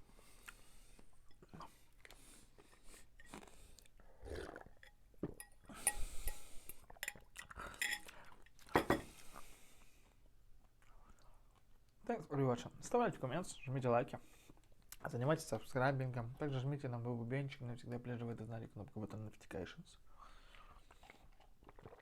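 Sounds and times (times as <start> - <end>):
chewing: 1.3 - 4.9, 20.5 - 22.0
cutlery clinking against dishes: 7.0 - 9.1.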